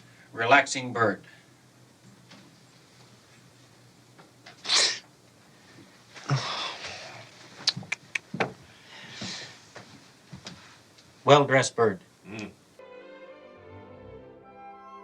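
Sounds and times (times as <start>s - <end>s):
soft breathy sounds: 5.5s - 7.5s
person's sharp burst of breath: 6.2s - 7.3s.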